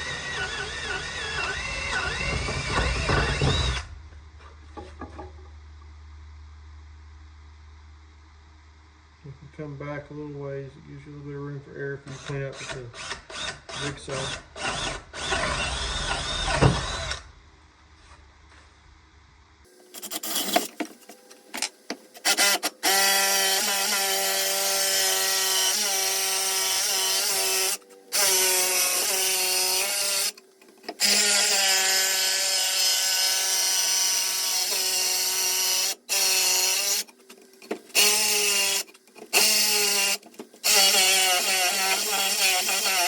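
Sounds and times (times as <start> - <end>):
electric drill whining: 0.0 - 3.9, 13.0 - 17.3, 22.2 - 30.4, 31.0 - 37.1, 37.9 - 43.0.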